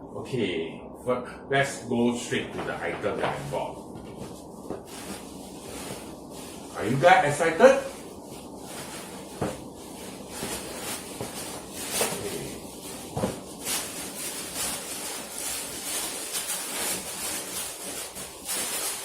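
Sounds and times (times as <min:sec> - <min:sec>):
tissue paper rustling and crinkling: 0:02.6 - 0:19.0.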